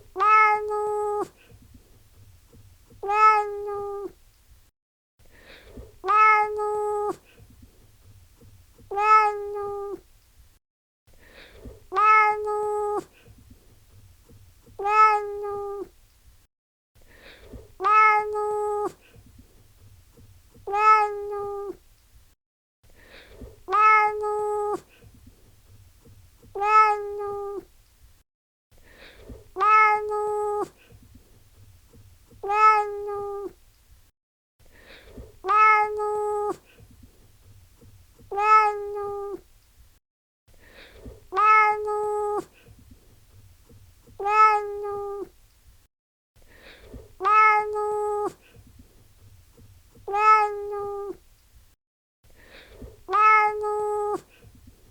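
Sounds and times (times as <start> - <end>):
cat meowing: 0.2 - 1.3, 3.0 - 4.1, 6.0 - 7.2, 8.8 - 10.0, 11.9 - 13.1, 14.7 - 15.9, 17.8 - 19.0, 20.7 - 21.8, 23.7 - 24.9, 26.5 - 27.7, 29.6 - 30.8, 32.4 - 33.6, 35.4 - 36.6, 38.3 - 39.4, 41.3 - 42.5, 44.1 - 45.3, 47.2 - 48.4, 50.1 - 51.2, 53.1 - 54.3.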